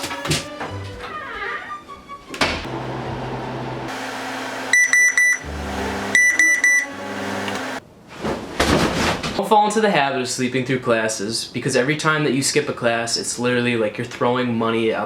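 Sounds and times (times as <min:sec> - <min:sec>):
alarm clock beeping: 0:04.7 - 0:05.5, 0:06.1 - 0:07.0.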